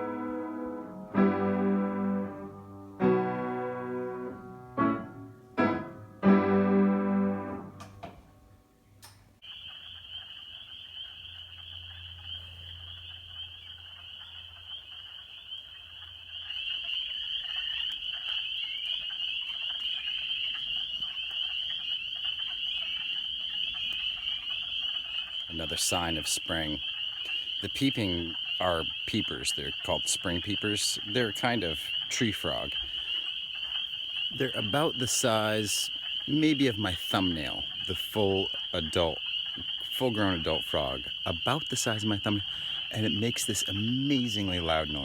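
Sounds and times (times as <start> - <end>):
piano chords: 0.0 - 8.7
spring peepers peeping: 9.4 - 45.0.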